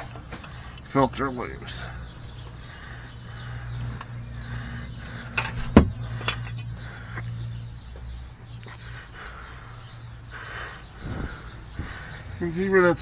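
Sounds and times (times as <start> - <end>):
hand tool clicks and knock: 5.8 - 6.0.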